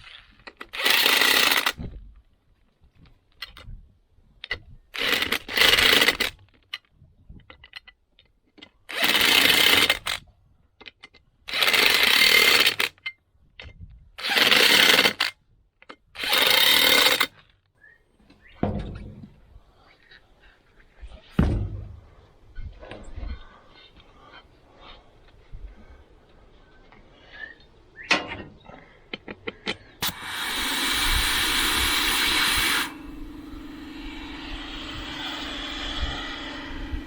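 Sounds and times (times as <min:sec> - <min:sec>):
impact wrench bursts: 0:00.7 - 0:01.8, 0:05.0 - 0:06.3, 0:08.9 - 0:10.1, 0:14.2 - 0:15.2, 0:16.2 - 0:17.3, 0:30.0 - 0:37.0
dull clunks: 0:18.3 - 0:19.5, 0:21.3 - 0:23.4.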